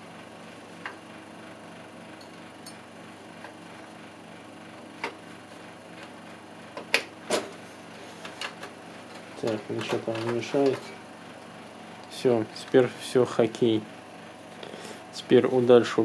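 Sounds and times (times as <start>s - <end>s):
steady background hum: 0.0s - 16.0s
computer parts clicking and knocking: 9.4s - 10.9s.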